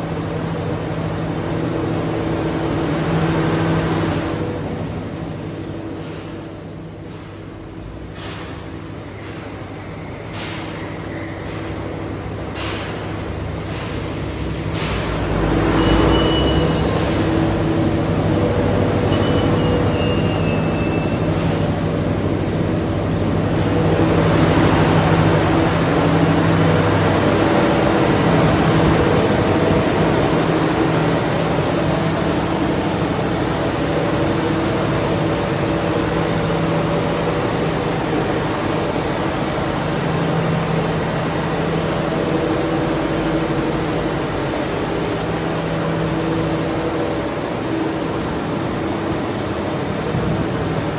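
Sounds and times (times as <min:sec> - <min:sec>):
generator engine running: 0:11.8 - 0:50.9.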